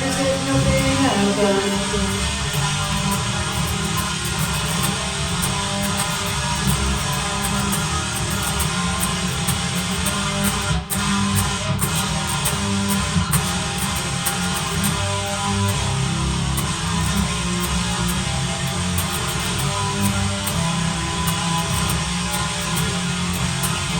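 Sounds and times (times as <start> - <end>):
backing song: 0.0 - 3.4
distorted electric guitar: 0.0 - 23.9.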